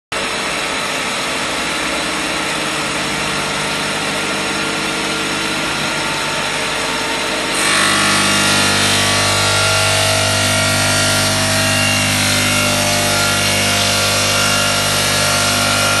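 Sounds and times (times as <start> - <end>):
machine humming and whirring: 0.2 - 16.0.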